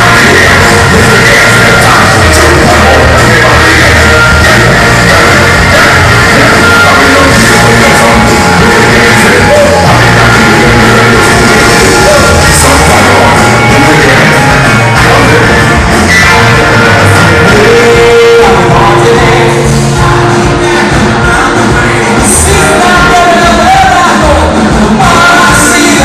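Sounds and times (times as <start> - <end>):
person singing or shouting: 0.0 - 26.0
rock band playing: 0.0 - 26.0.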